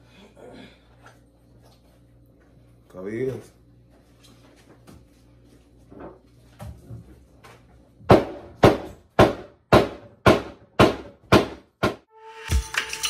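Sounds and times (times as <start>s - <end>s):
hammer striking cabinet: 8.1s - 12.0s.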